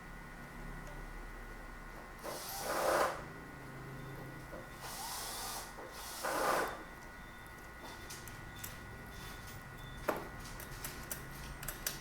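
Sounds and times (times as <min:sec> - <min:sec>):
small parts clicking and tapping: 0:09.4 - 0:12.0.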